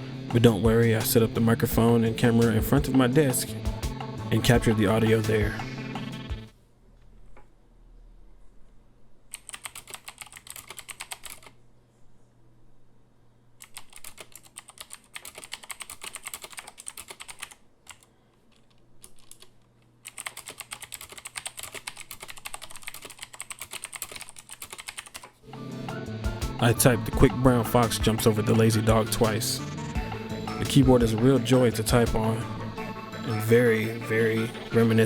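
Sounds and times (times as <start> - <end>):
clicky mechanical keyboard typing: 9.3 - 11.6, 13.6 - 25.4.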